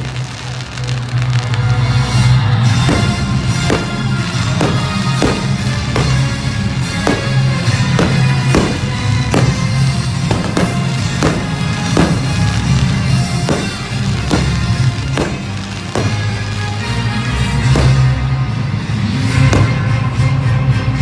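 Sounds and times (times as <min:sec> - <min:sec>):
fireworks bursting: 0:00.0 - 0:20.3
loud music with heavy drum beat: 0:02.8 - 0:16.3.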